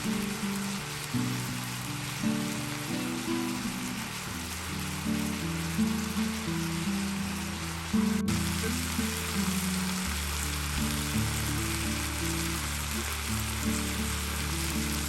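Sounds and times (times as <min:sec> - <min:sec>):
food sizzling in a frying pan: 0:00.0 - 0:15.0
background music with bass line: 0:07.4 - 0:15.0.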